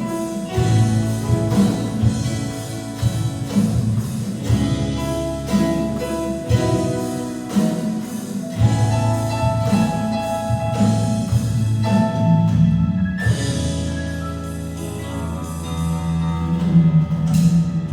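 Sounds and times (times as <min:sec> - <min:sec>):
drum hits: 0:00.0 - 0:13.9
worship band playing: 0:00.0 - 0:16.8.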